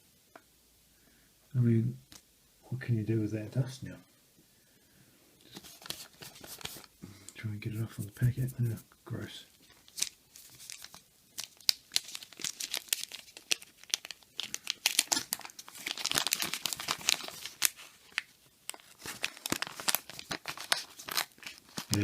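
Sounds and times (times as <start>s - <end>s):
wax paper packs tearing and crinkling: 5.5s - 6.9s, 9.8s - 22.0s.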